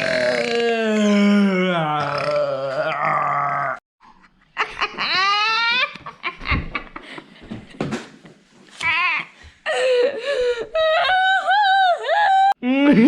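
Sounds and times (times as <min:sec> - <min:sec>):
long burp: 0:00.0 - 0:03.8
person laughing: 0:04.3 - 0:07.3, 0:12.2 - 0:13.0.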